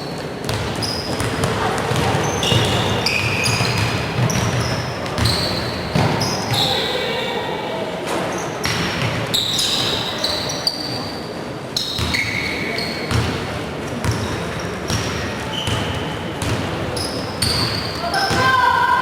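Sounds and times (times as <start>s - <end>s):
sneakers squeaking on floor: 0.0s - 7.5s, 8.2s - 18.9s
voices echoing in hall: 0.0s - 19.0s
basketball bouncing: 0.4s - 6.7s, 13.1s - 18.6s.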